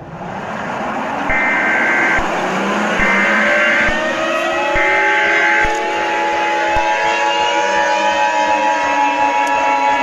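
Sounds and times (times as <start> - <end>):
shrill two-tone alert signal: 1.3 - 2.4, 3.0 - 7.3
low tone dropping in pitch: 1.3 - 9.6.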